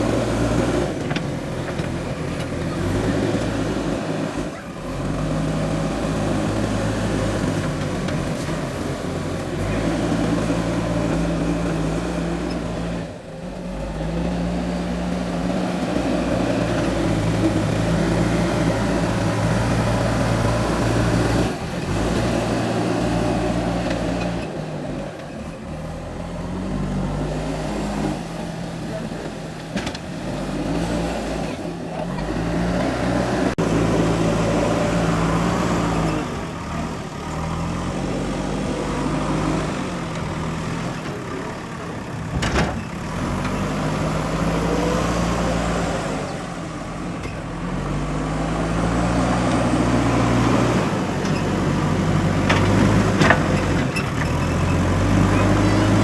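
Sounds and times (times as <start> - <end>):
digger diesel engine revving: 0.0 - 56.0.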